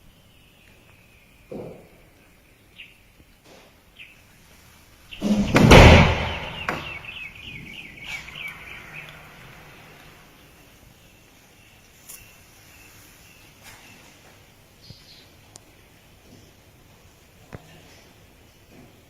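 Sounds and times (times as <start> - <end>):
loud rushing burst of noise: 5.2 - 7.2.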